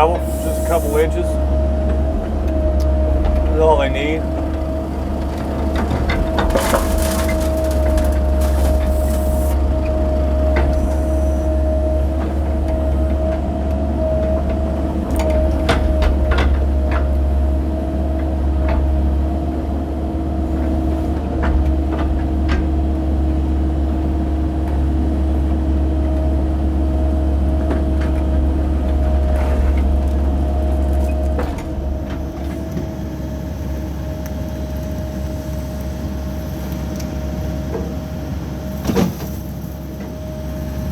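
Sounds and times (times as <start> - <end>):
hydraulic whine: 0.0 - 17.8
diesel engine under load: 0.0 - 40.9
clanks and knocks on gravel: 5.2 - 9.6.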